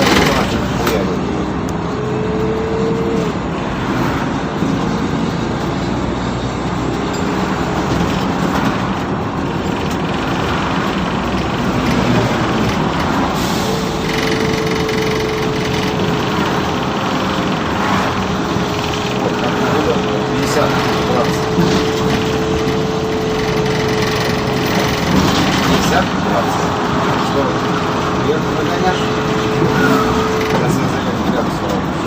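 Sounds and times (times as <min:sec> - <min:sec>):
bus engine and road rumble: 0:00.0 - 0:32.0
steady whine: 0:09.6 - 0:27.6.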